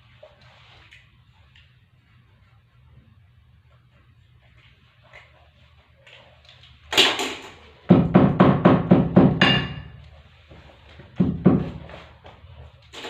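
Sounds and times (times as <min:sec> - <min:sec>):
hammer knocks with ring: 0:08.4 - 0:10.0.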